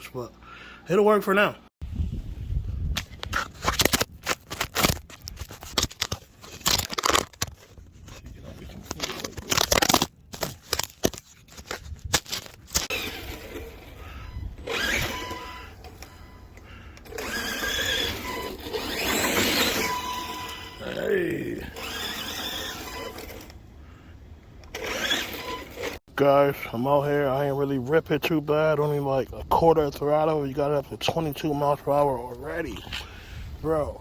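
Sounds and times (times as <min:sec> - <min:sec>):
faint electric motor whine: 0:12.7 - 0:26.0.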